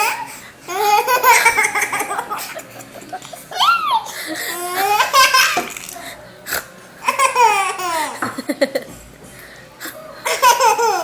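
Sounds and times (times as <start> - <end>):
baby girl laughing: 0.0 - 5.8.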